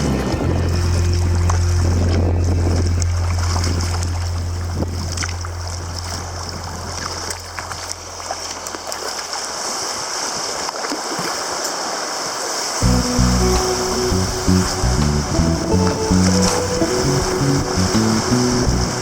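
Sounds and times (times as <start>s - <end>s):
low steady music tone: 0.0s - 8.5s, 12.8s - 19.0s
sea water splashing: 0.7s - 19.0s.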